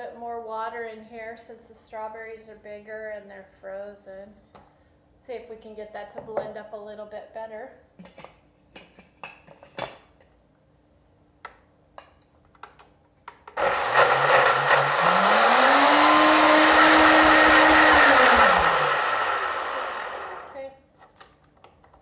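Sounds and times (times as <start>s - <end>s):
blender motor churning fruit: 13.6s - 20.6s.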